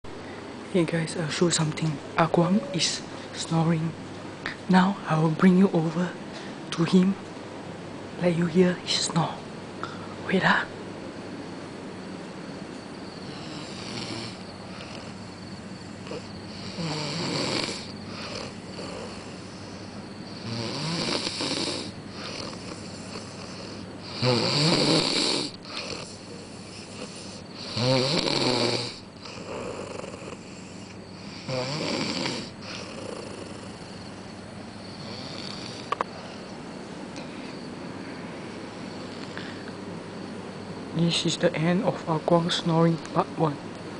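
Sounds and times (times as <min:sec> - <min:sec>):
man snoring: 0:13.2 - 0:15.2, 0:15.9 - 0:34.2, 0:34.9 - 0:36.0.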